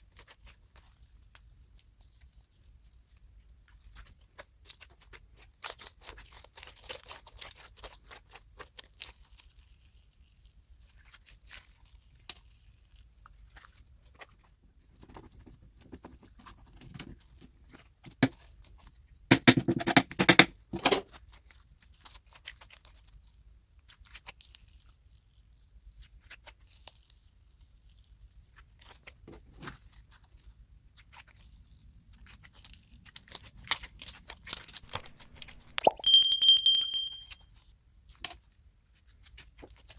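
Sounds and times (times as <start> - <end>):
slime squishing with sticky crackles: 0.0 - 15.5, 21.3 - 34.1.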